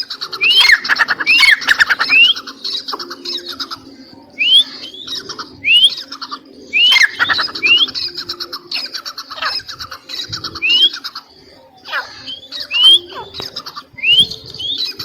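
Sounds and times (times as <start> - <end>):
scratchy rapid chattering calls: 0.0 - 3.9, 4.6 - 15.0
francolin rising whistled calls: 0.4 - 2.5, 4.4 - 8.1, 10.6 - 11.1, 11.8 - 13.4, 14.0 - 14.8.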